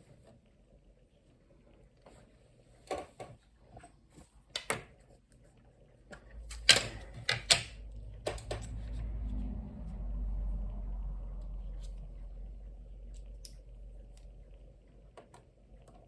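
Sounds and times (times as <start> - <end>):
low hum: 7.7 - 15.1.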